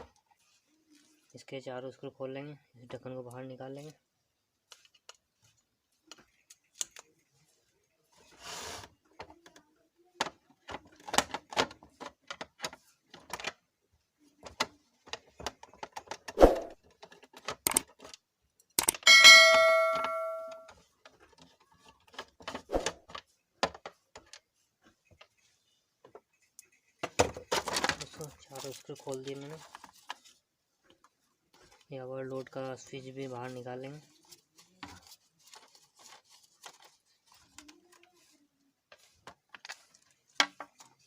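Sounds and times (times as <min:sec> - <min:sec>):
screwdriver clicking on plastic: 0:17.1 - 0:18.1, 0:18.7 - 0:19.1
metallic ding: 0:19.0 - 0:20.7.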